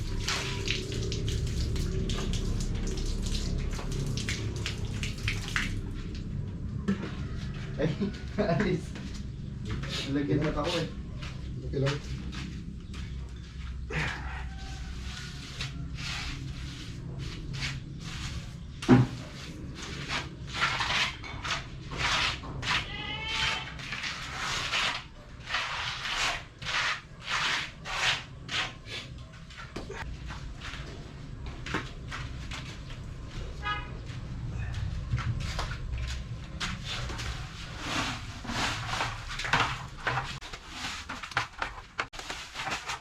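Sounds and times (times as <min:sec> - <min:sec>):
tools scraping wet concrete: 0:00.0 - 0:05.2, 0:14.0 - 0:30.0, 0:36.6 - 0:43.0.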